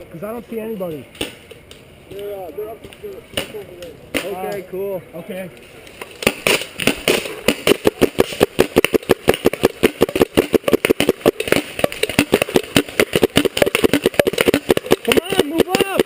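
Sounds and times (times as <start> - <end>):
paintball marker rapid firing: 6.2 - 16.0.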